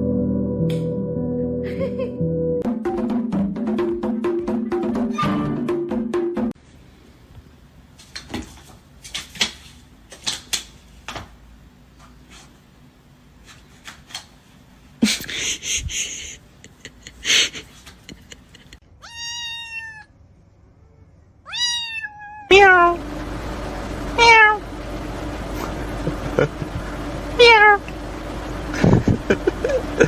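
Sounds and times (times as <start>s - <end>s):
cat meowing: 19.0s - 20.1s, 21.4s - 23.0s, 24.2s - 24.6s, 27.4s - 27.8s.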